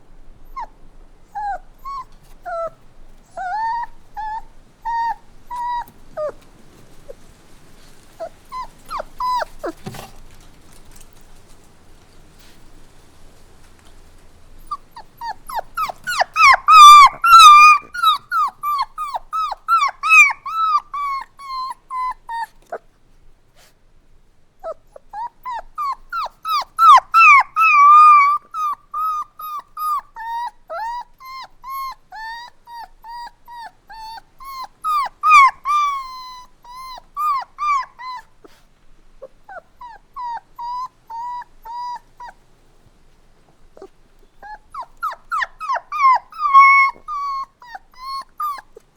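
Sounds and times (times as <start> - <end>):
puppy whimpering and yelping: 0.4 - 6.5, 8.2 - 10.0, 14.6 - 22.9, 24.6 - 42.4, 43.7 - 48.9.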